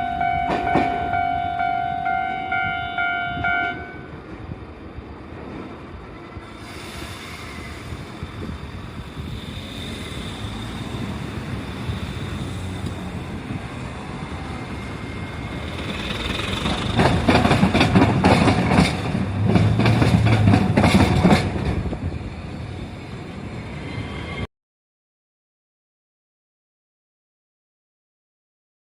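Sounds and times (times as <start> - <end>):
train rumble: 0.0 - 24.5
train wheels clacking: 0.4 - 1.2, 6.4 - 22.0.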